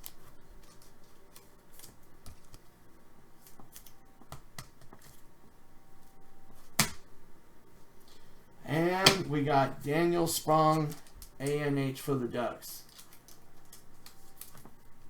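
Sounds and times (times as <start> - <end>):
cards clicking and shuffling: 0.0 - 2.7, 3.4 - 5.2, 8.0 - 11.8, 12.8 - 15.0
card snapping: 9.0 - 9.4.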